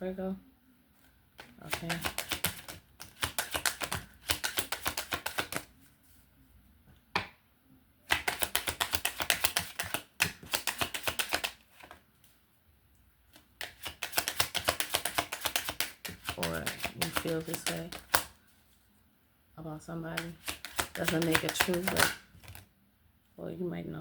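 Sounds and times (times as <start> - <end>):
sharp card snap: 1.4 - 5.6, 20.2 - 22.6
cards being shuffled: 1.4 - 5.7, 8.1 - 12.3, 13.3 - 18.4, 20.2 - 22.7.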